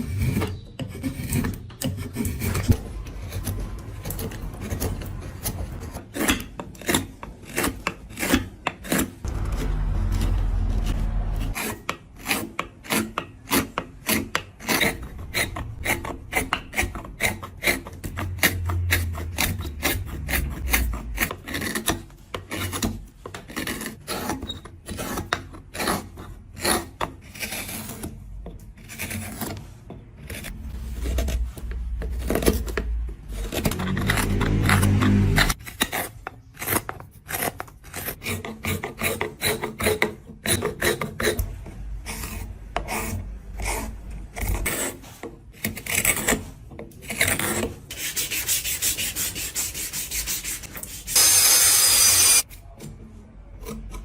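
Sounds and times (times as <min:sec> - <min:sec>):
hand tool scraping wood: 0:00.0 - 0:28.2, 0:28.8 - 0:52.5
low steady hum: 0:09.3 - 0:11.6.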